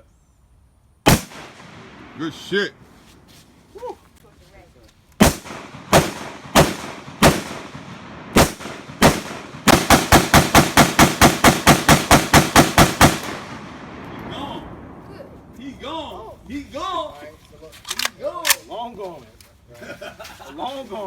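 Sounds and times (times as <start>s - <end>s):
gunshots: 1.1s - 2.7s, 5.2s - 15.2s.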